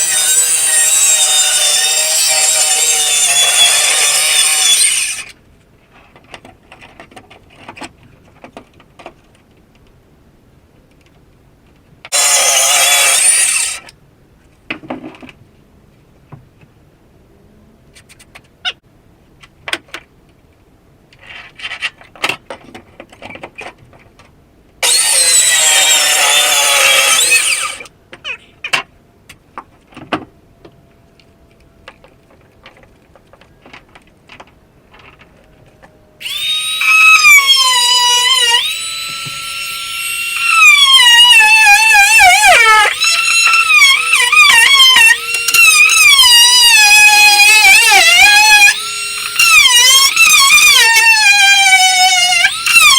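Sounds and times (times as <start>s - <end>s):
loud whining tool: 0.0s - 5.3s, 12.1s - 13.9s, 24.8s - 27.9s, 36.2s - 52.9s
power tool running: 0.0s - 5.3s, 12.1s - 13.8s, 24.8s - 27.9s, 36.2s - 52.9s.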